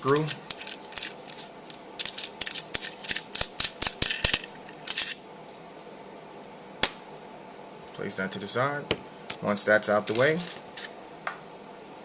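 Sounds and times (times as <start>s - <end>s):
small metallic clicks and scrapes: 0.0s - 6.0s.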